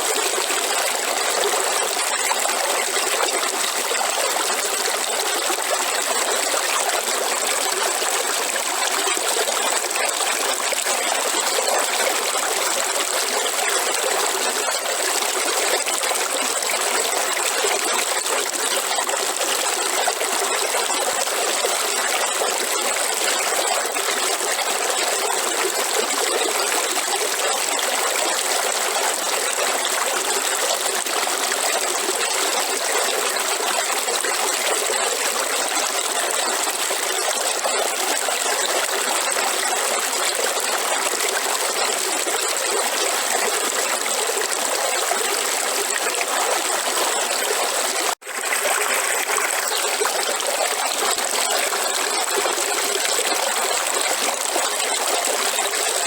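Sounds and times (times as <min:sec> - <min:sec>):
river water flowing: 0:40.8 - 0:56.0.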